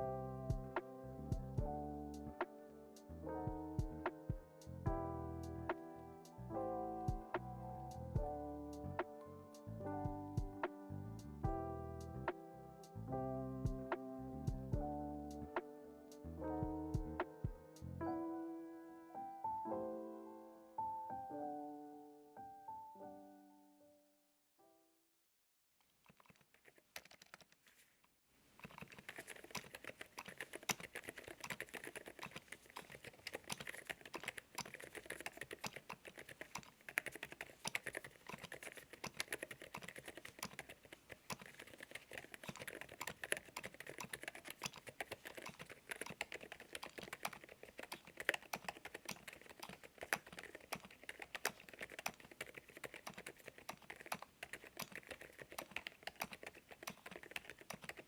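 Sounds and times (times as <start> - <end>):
mechanical keyboard typing: 28.6 - 58.0.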